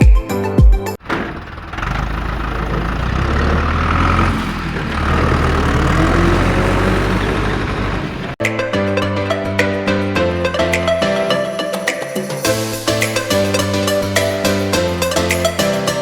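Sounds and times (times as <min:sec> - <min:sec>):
music: 0:00.0 - 0:01.0, 0:08.4 - 0:16.0
vehicle engine running: 0:01.0 - 0:08.4.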